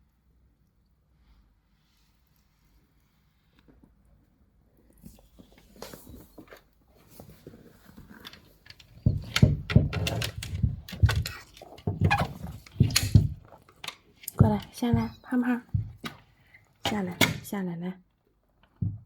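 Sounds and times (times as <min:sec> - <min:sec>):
faint knocks and scrapes: 0:01.8 - 0:17.1
thumps on hard surfaces: 0:09.0 - 0:13.6, 0:14.3 - 0:16.2, 0:18.7 - 0:19.0.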